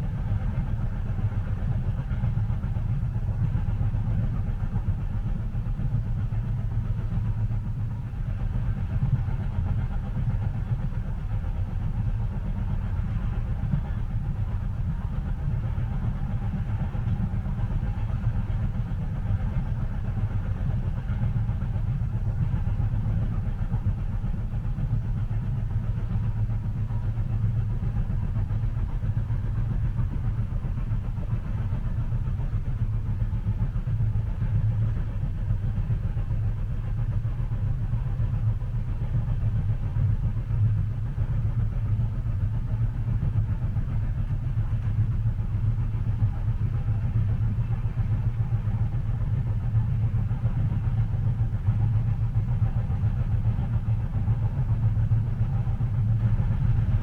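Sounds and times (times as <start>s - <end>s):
low rumble of moving train: 0.0s - 57.0s.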